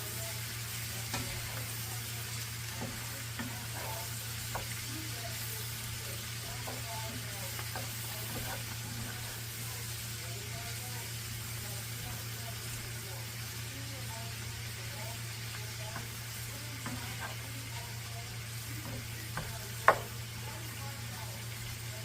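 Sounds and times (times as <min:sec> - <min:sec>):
vegetables sizzling in grease: 0:00.0 - 0:22.0
utensil scraping and tapping pan: 0:06.6 - 0:09.3, 0:16.8 - 0:17.4.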